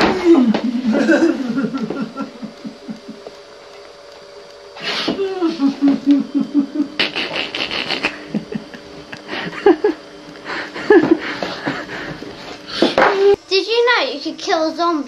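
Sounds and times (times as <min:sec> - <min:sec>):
child laughing: 0:00.0 - 0:03.2, 0:05.2 - 0:07.0, 0:07.9 - 0:10.0, 0:10.6 - 0:11.9.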